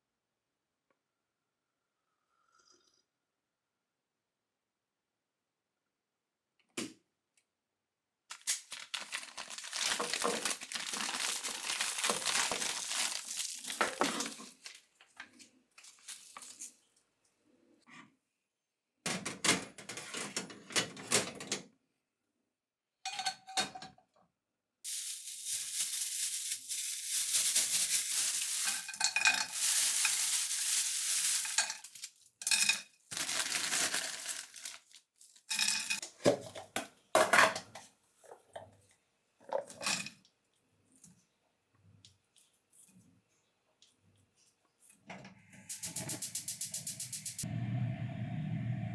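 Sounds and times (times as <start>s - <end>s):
dishes and cutlery clattering: 23.1s - 24.0s.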